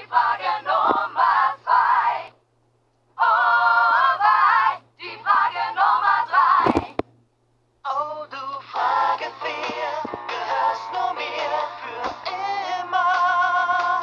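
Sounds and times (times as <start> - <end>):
person singing: 7.9 - 14.0.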